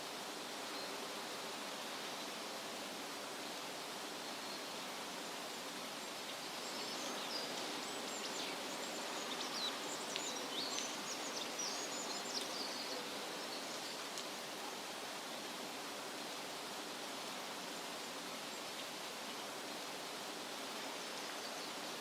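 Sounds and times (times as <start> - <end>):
steady rushing hiss: 0.0 - 22.0
songbird chirping: 6.3 - 14.2.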